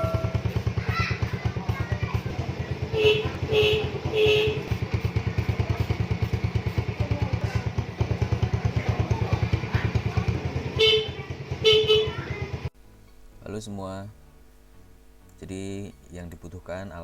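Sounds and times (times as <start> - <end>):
motorcycle engine idling: 0.0 - 17.0
electric horn toots: 2.9 - 4.8, 10.8 - 12.3.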